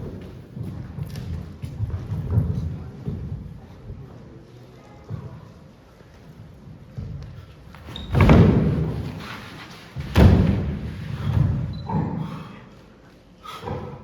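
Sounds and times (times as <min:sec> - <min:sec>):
loud thuds: 0:07.8 - 0:09.3, 0:10.0 - 0:11.7.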